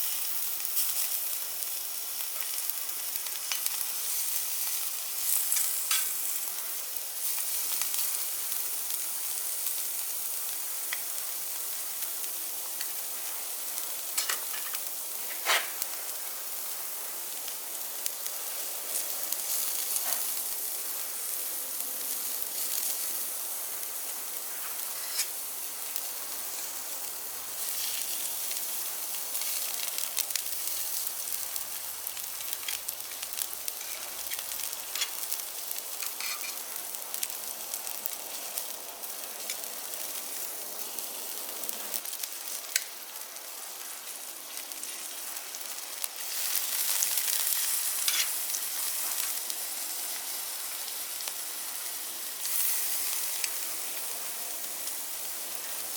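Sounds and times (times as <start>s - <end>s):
food sizzling on a grill: 0.0s - 55.9s
sharp crackles: 24.4s - 37.0s.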